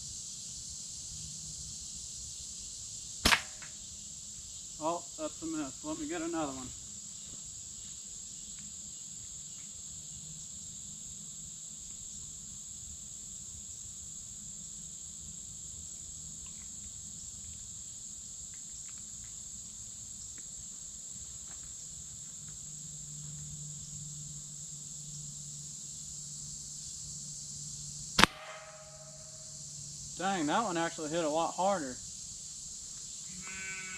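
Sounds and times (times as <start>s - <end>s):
crickets chirping: 0.0s - 33.9s
slingshot crack: 3.2s - 3.8s, 28.2s - 29.4s.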